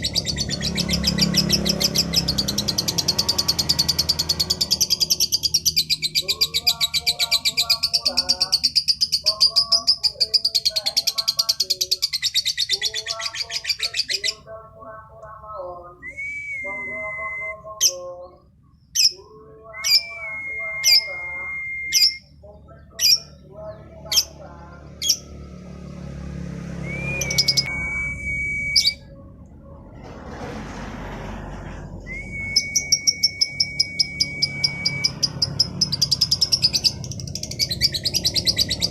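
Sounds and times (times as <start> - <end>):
lovebird chirping and trilling: 0.0 - 14.6, 16.6 - 25.4, 26.9 - 29.2, 32.1 - 38.9.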